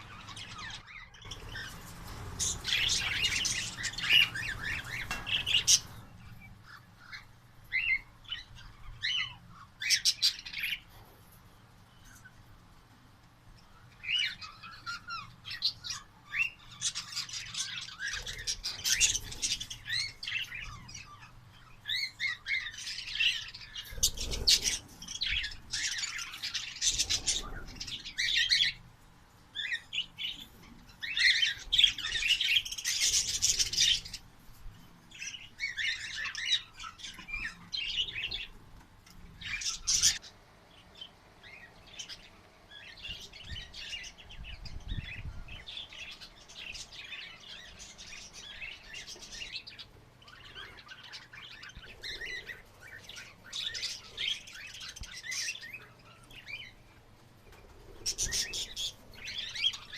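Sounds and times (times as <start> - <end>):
birds chirping and chattering: 0.0 - 59.9.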